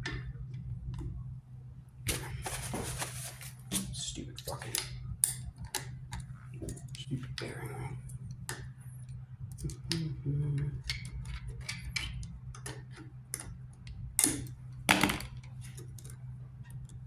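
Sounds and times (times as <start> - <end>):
light clicks and taps on metal: 4.4 - 14.6.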